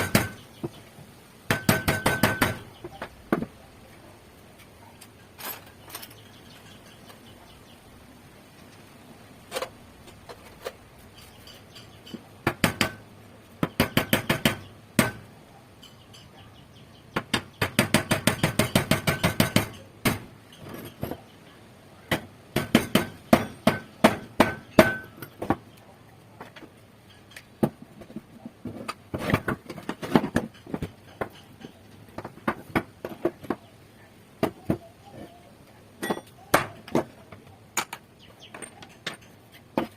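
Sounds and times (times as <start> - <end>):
hammer striking metal: 22.1 - 25.2.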